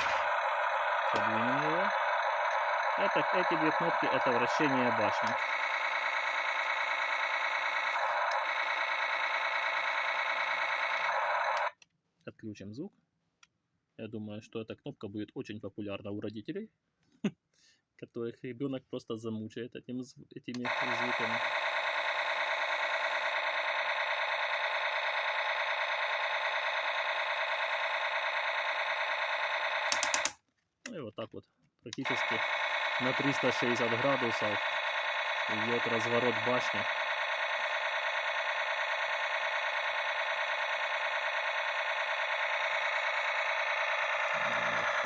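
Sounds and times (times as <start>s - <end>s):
electronic machine-gun effect: 0.0s - 11.8s, 20.6s - 30.4s, 32.0s - 45.0s
toy gear motor whirring: 0.0s - 11.8s, 20.6s - 30.4s, 32.0s - 45.0s.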